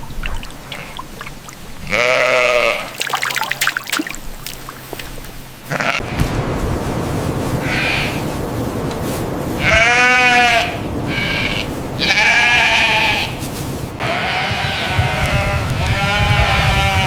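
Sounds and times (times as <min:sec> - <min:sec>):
sheep bleating: 0:01.9 - 0:02.9, 0:05.7 - 0:06.1, 0:09.6 - 0:13.4, 0:14.0 - 0:17.0
steady low background rumble: 0:05.4 - 0:17.0.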